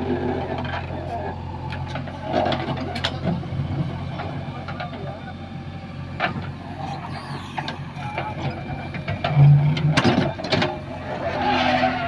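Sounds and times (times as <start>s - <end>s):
diesel engine running: 0.0s - 12.0s
metallic clanks and knocks: 8.9s - 10.8s.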